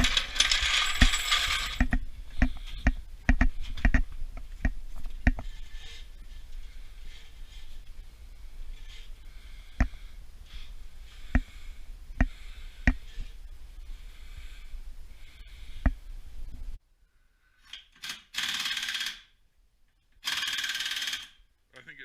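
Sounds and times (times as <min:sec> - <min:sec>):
steady low hum: 0:00.0 - 0:16.8.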